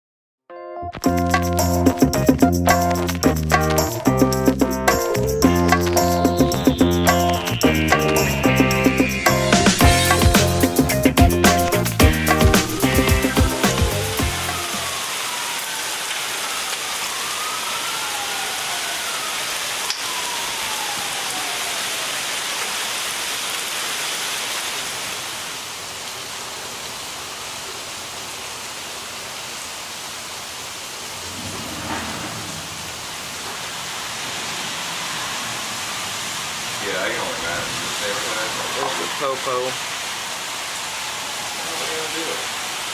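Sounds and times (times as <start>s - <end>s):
heavy rain hissing: 1.6s - 42.9s
thunder rumble: 31.1s - 39.2s.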